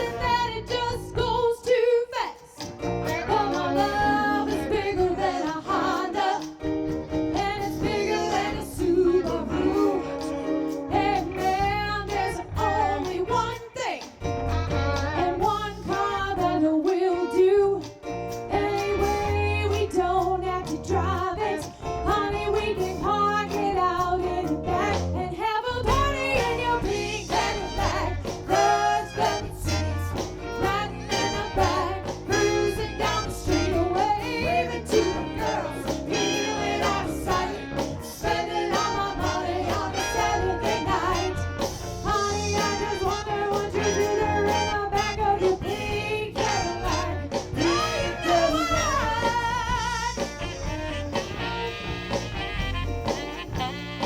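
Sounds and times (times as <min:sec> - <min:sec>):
electric guitar: 0:00.0 - 0:01.5, 0:02.6 - 0:54.0
bass guitar: 0:00.0 - 0:01.6, 0:02.6 - 0:54.0
drums: 0:00.0 - 0:54.0
keyboard: 0:02.6 - 0:54.0
person singing: 0:07.8 - 0:13.9, 0:30.6 - 0:50.4.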